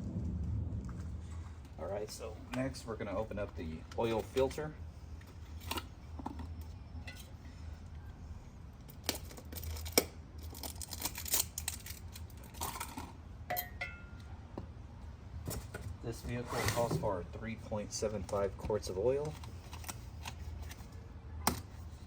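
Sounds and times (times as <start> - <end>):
steady low hum: 0.0 - 10.6
wrapping tearing: 9.0 - 12.4
box and wrapping rustling: 15.5 - 17.1.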